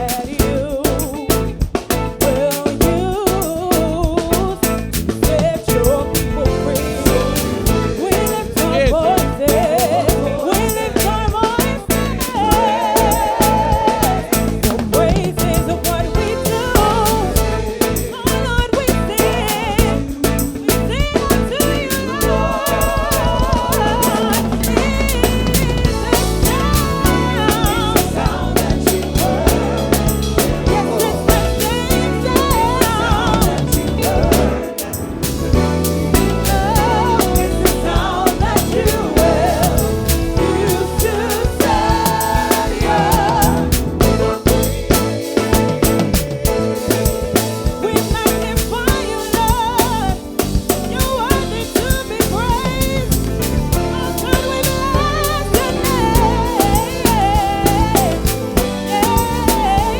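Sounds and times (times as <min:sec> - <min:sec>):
band playing gospel song: 0:00.0 - 0:59.9
bass line: 0:00.0 - 0:59.9
drum kit beat: 0:00.0 - 0:59.9
person singing with vibrato: 0:00.0 - 0:59.9.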